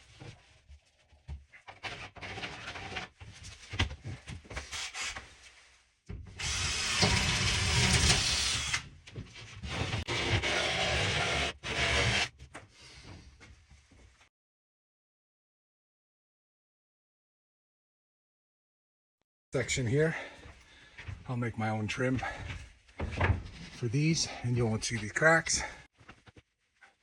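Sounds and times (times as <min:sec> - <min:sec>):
power tool cutting board: 0:06.4 - 0:08.8, 0:10.1 - 0:12.3
knocks and clatter of handling: 0:22.2 - 0:23.8.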